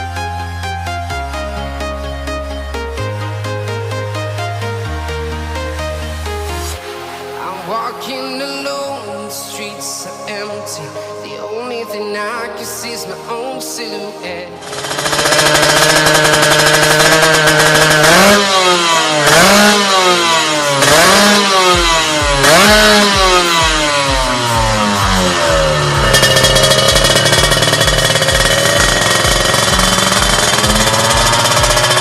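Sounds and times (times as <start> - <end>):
motorcycle engine revving: 14.6 - 32.0.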